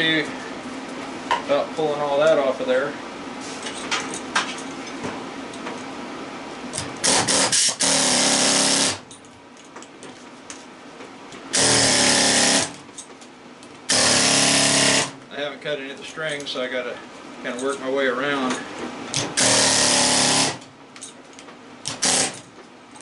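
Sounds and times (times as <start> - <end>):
pneumatic air chisel hammering: 6.8 - 9.1, 11.5 - 12.8, 13.9 - 15.2, 19.1 - 20.6, 21.8 - 22.5.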